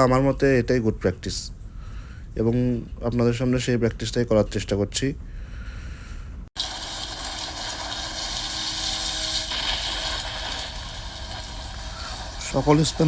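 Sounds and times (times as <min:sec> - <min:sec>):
engine room machinery noise: 0:10.7 - 0:13.0.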